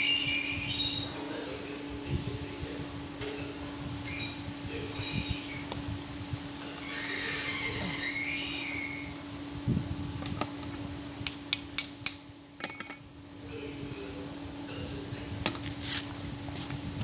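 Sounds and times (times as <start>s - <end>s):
steady low hum: 0.0s - 17.0s
hard objects clinking together: 12.6s - 13.2s, 15.5s - 15.8s.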